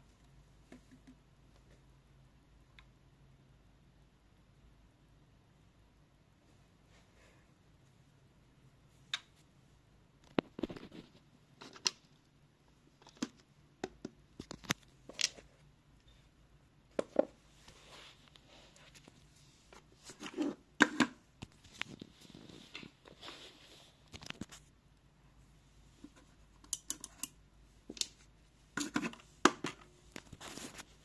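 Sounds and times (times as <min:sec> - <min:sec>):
objects being handled: 0:10.2 - 0:12.2, 0:16.9 - 0:24.7, 0:25.9 - 0:31.0.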